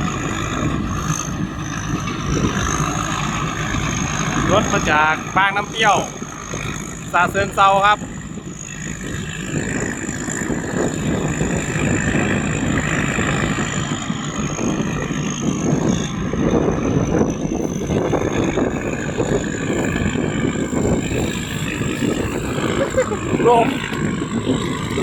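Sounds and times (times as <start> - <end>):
combine harvester running: 0.0 - 25.0
high whine: 0.0 - 25.0.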